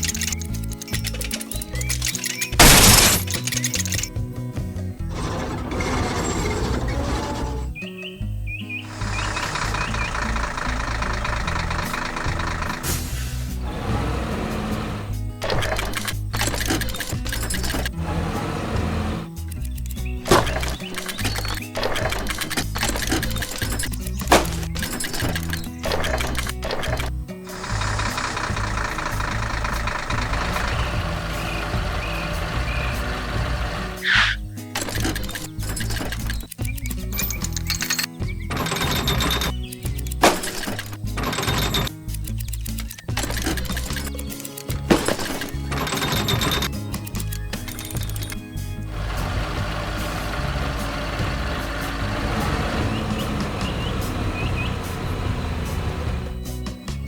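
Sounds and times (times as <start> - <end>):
heavy truck engine running: 0.0 - 57.0
loud air hiss: 12.8 - 13.6.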